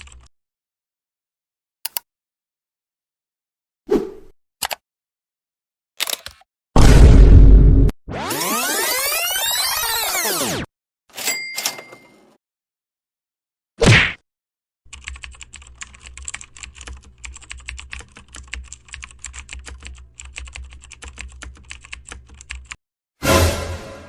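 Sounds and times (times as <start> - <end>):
keyboard key clicks: 6.0 - 6.4.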